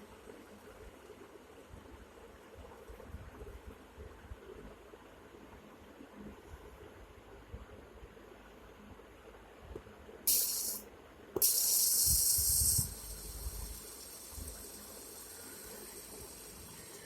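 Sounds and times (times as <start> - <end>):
high-pitched hiss bursts: 10.3 - 10.8, 11.4 - 17.0.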